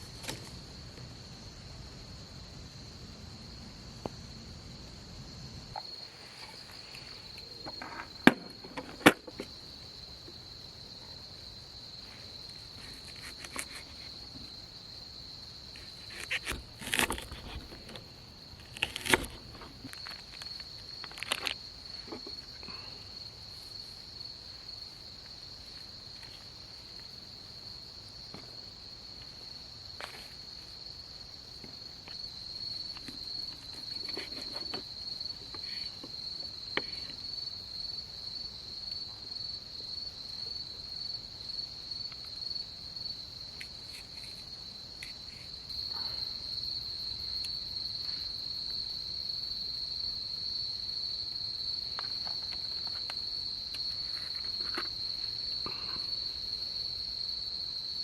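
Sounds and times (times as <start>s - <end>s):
insects trilling: 0.0s - 58.0s.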